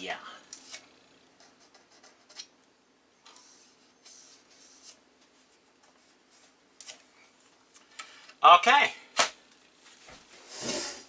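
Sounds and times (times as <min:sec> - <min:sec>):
faint handling scrapes: 0:09.9 - 0:11.0.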